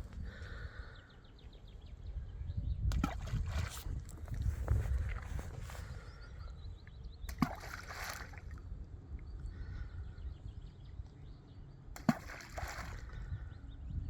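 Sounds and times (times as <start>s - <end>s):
groundbait splashing into water: 2.9s - 3.9s, 7.3s - 8.6s, 12.0s - 13.1s.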